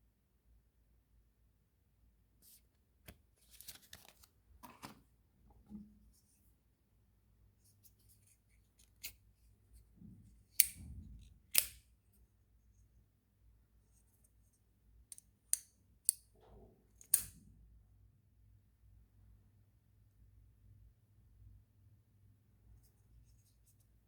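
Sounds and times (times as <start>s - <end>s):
loud sharp knife clicks: 11.6s - 11.8s.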